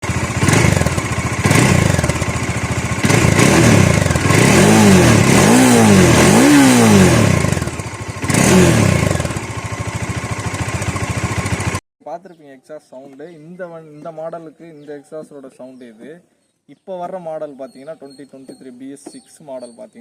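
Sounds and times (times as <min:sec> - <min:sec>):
motorcycle engine revving: 0:00.0 - 0:11.8.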